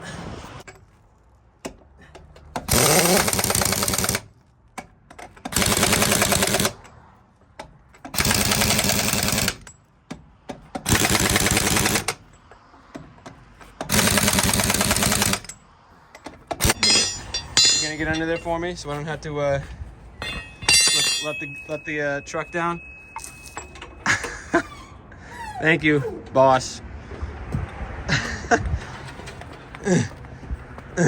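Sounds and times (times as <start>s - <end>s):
impact wrench hammering: 2.6s - 4.2s, 16.6s - 18.6s, 20.2s - 22.0s.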